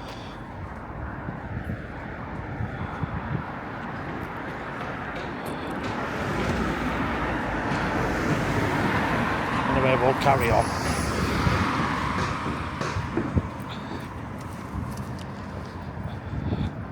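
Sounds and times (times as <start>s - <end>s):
wind rumbling on microphone: 0.0s - 5.2s, 10.6s - 16.9s
road traffic: 0.0s - 16.9s.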